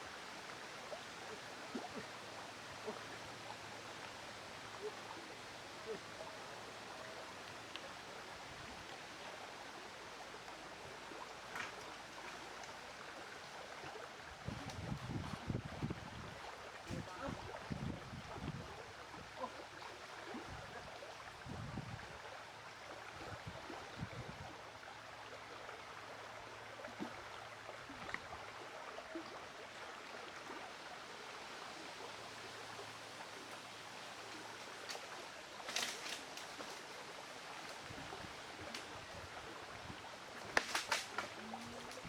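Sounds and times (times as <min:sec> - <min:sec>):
faint outdoor background hiss: 0:00.0 - 0:42.0
crackling burst of clicks: 0:40.5 - 0:41.3.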